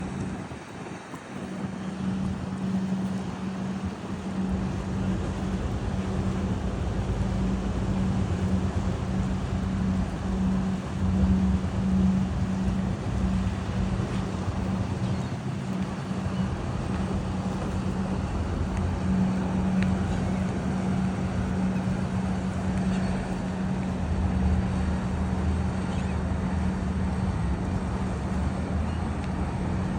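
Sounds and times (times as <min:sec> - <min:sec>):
boat engine droning: 0:00.0 - 0:29.9
wind and water noise: 0:00.0 - 0:29.9.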